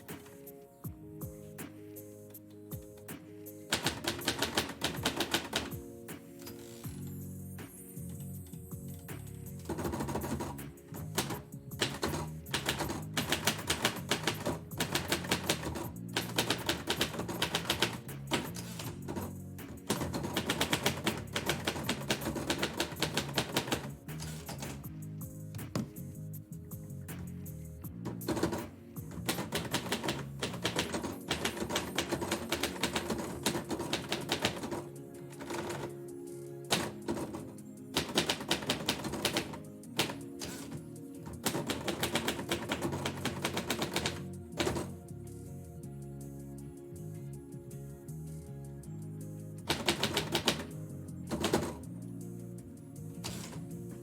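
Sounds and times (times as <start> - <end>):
background music: 0.0 - 54.0
typewriter keys striking: 3.7 - 5.8, 9.7 - 24.8, 28.1 - 36.0, 36.7 - 45.0, 49.7 - 51.8, 53.2 - 53.7.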